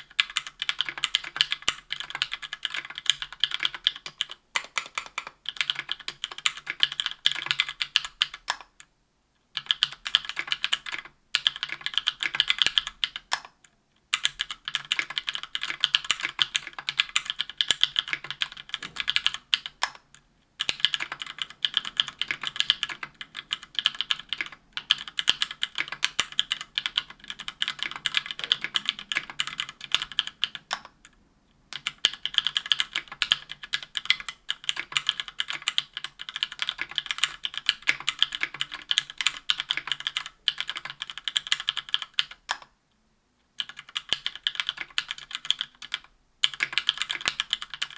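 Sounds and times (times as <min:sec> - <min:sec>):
mechanical keyboard typing: 0:00.0 - 0:08.9, 0:09.6 - 0:42.7, 0:43.6 - 0:47.9.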